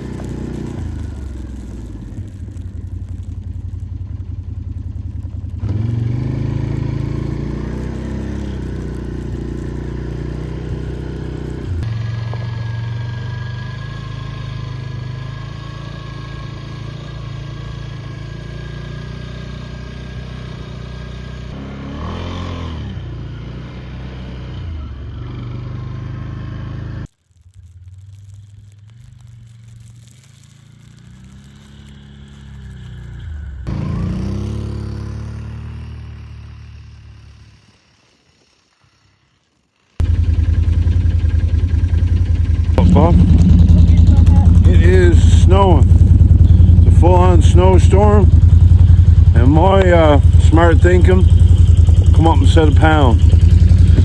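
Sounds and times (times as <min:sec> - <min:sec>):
atv engine running: 0:00.0 - 0:27.1, 0:30.7 - 0:54.0.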